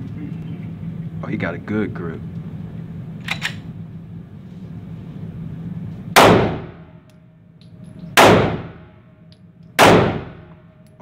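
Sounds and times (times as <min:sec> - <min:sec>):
pistol shot with ringing decay: 0:06.2 - 0:06.9, 0:08.2 - 0:08.9, 0:09.8 - 0:10.5.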